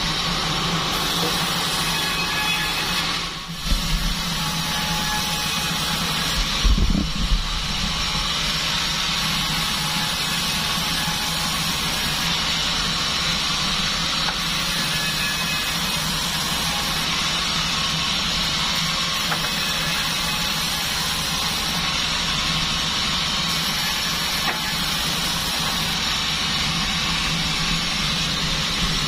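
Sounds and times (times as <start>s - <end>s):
band saw running: 0.0s - 29.0s.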